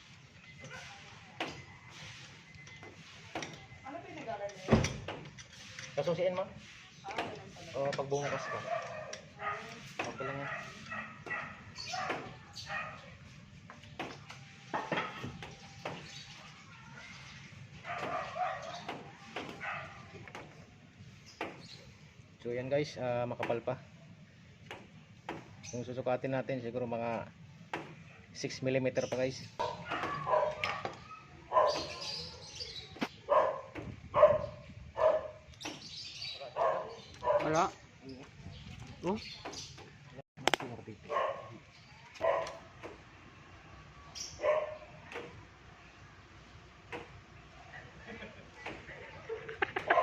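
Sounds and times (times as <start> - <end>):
dog barking: 8.2 - 13.2, 17.8 - 20.2, 29.6 - 32.2, 33.2 - 35.5, 36.4 - 37.6, 41.1 - 41.6, 42.2 - 42.7, 44.4 - 45.0
sharp clicks and knocks: 39.4 - 40.8
sharp click: 40.4 - 40.7.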